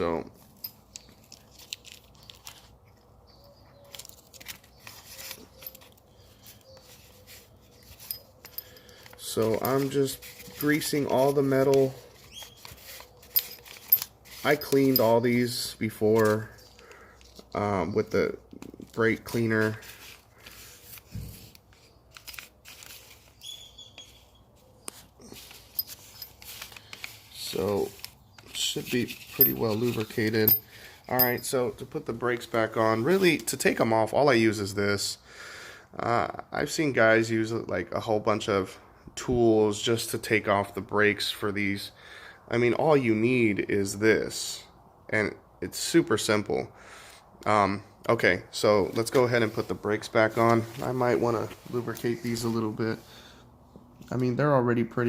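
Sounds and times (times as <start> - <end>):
small metal parts clicking and scraping: 3.9 - 17.5, 25.2 - 31.6.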